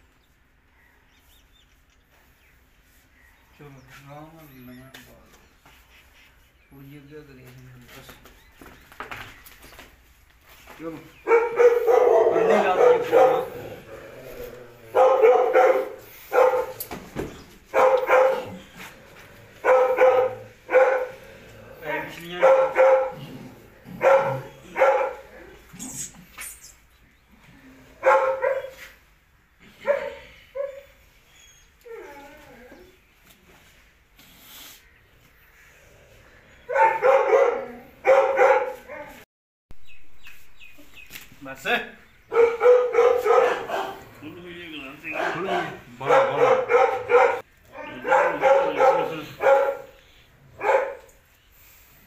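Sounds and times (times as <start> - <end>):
dog barking: 11.2 - 13.9, 14.9 - 16.9, 17.7 - 18.7, 19.6 - 21.2, 21.9 - 23.2, 23.9 - 25.3, 28.0 - 28.9, 29.8 - 30.8, 36.7 - 39.2, 42.3 - 44.2, 45.1 - 50.0, 50.6 - 51.2.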